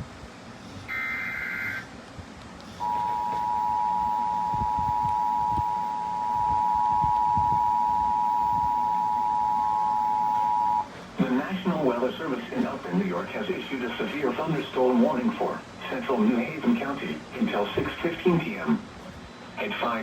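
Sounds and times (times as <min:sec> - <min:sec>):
two-tone attention signal: 0:02.8 - 0:10.9
faint radio static: 0:02.8 - 0:18.9, 0:19.5 - 0:20.0.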